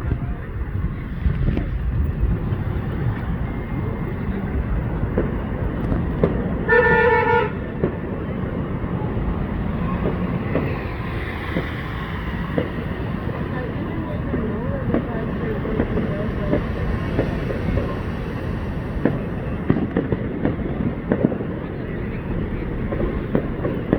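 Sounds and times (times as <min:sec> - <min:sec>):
city noise rumble: 0:00.0 - 0:23.9
horn toot: 0:06.6 - 0:07.7.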